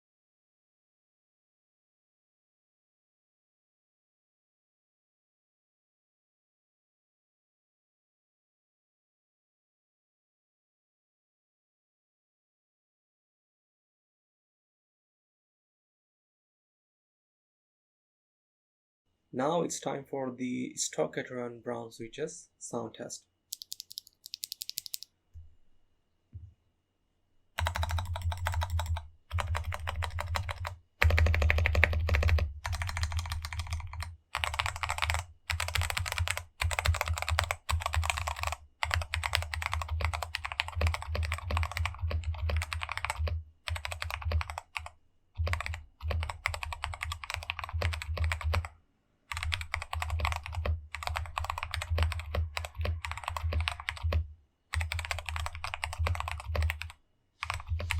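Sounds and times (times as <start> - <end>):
typing on mechanical keyboard: 23.5 - 25.1, 27.6 - 48.7, 49.3 - 57.9.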